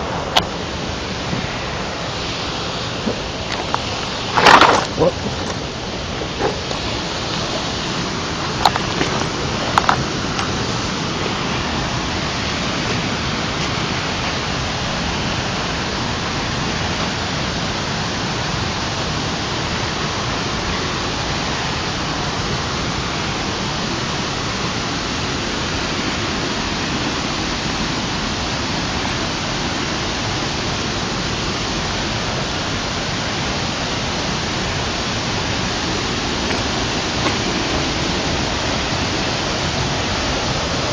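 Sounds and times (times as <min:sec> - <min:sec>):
river water pouring over wall: 0:00.0 - 0:40.9.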